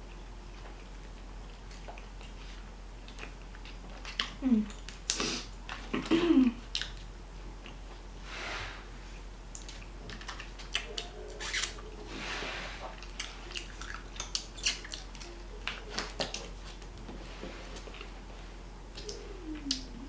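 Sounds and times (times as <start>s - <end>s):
chewing with sharp clicks: 0.1s - 2.4s, 3.0s - 5.9s, 6.7s - 7.8s, 9.5s - 11.8s, 13.0s - 16.5s.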